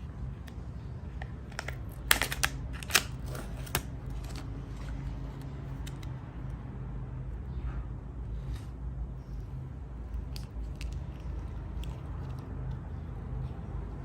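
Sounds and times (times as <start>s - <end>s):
steady low hum: 0.0s - 14.0s
plastic packaging crinkling: 1.4s - 5.0s.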